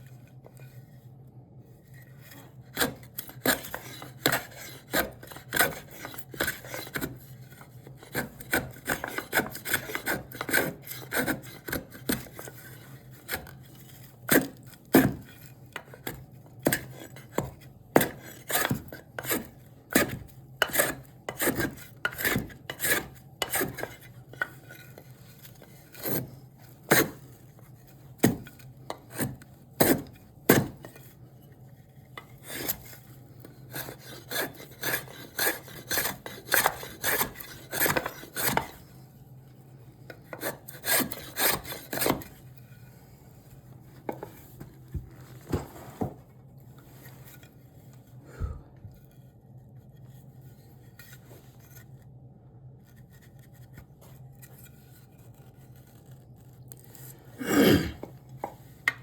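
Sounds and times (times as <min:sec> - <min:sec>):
hand tool scraping wood: 0:02.0 - 0:31.5, 0:32.1 - 0:39.0, 0:40.0 - 0:46.2.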